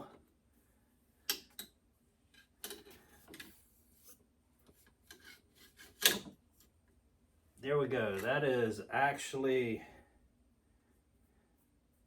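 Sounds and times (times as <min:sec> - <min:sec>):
light scrapes and clicks: 0:02.3 - 0:06.7.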